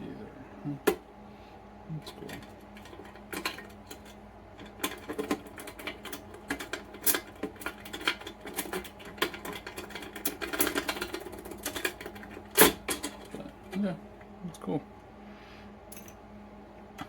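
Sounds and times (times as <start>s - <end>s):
lock clicking and metallic rattling: 2.3s - 13.8s.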